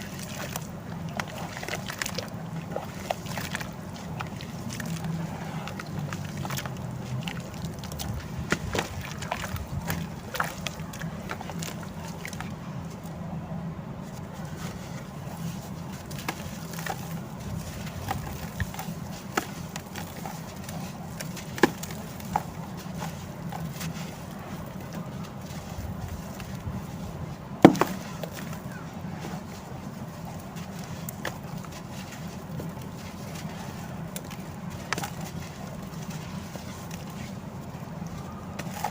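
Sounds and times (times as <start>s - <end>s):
steady low hum: 0.0s - 38.9s
cement clumps crumbling and snapping: 14.6s - 26.9s, 27.5s - 38.9s.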